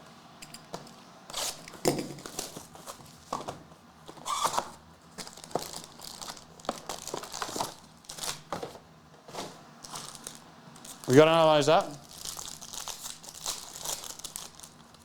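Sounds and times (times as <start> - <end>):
packaging torn and crinkled: 5.2 - 8.5, 9.9 - 15.0.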